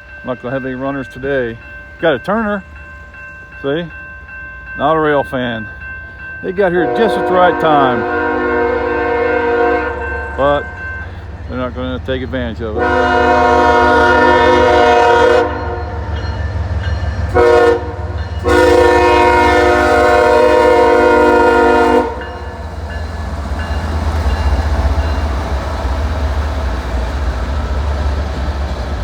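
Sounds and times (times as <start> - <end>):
train rumbling past: 0.0 - 29.0
locomotive horn blasts: 6.8 - 10.9, 12.7 - 16.1, 17.3 - 22.6.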